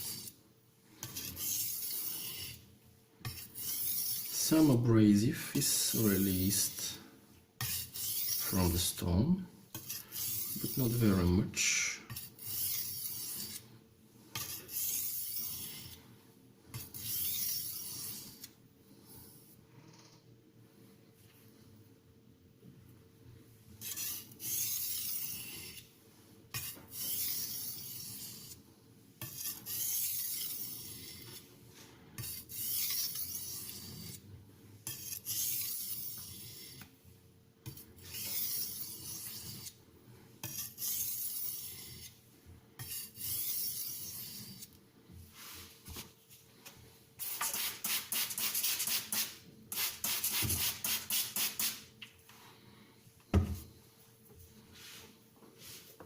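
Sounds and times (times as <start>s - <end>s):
knife scraping on sharpening stone: 1.0s - 2.6s, 3.2s - 4.4s, 7.6s - 8.8s, 9.7s - 10.8s, 12.1s - 13.6s, 14.3s - 16.0s, 16.7s - 18.5s, 23.8s - 25.9s, 26.5s - 28.6s, 29.2s - 31.4s, 32.2s - 34.2s, 34.8s - 36.8s, 37.7s - 39.8s, 40.4s - 42.1s, 42.8s - 44.7s.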